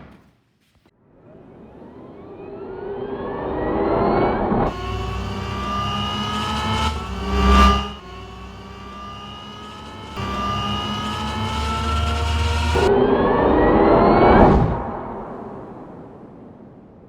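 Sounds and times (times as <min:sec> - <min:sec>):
engine revving: 0:04.7 - 0:13.0.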